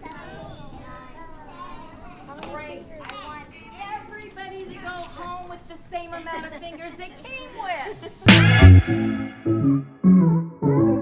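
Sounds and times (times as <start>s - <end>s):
loud drum hit: 8.3s - 9.8s
electronic music: 8.3s - 11.0s
synth chords: 8.3s - 11.0s.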